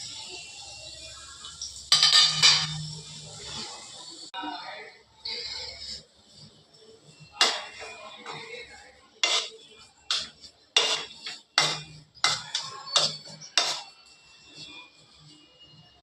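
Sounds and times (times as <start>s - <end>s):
utensils clinking on dishes: 1.4s - 3.1s, 7.3s - 14.7s.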